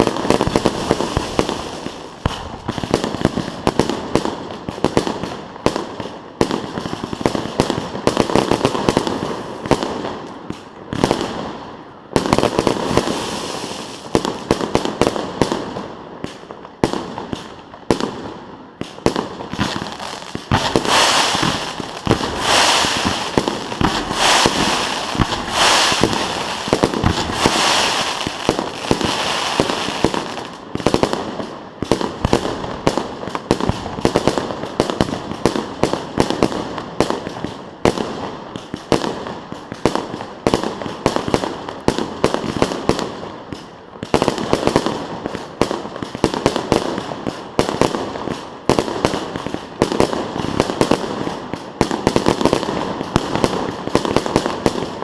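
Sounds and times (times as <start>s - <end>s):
fireworks bangs and crackling: 0.0s - 55.0s
fireworks hissing bursts: 12.6s - 14.1s, 19.6s - 30.6s.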